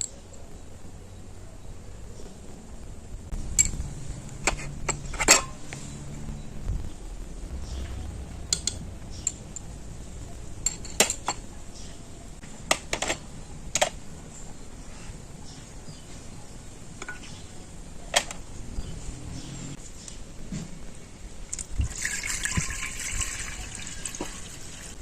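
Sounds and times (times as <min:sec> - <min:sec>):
kitchen utensils clinking: 0:04.5 - 0:05.6, 0:10.6 - 0:11.4.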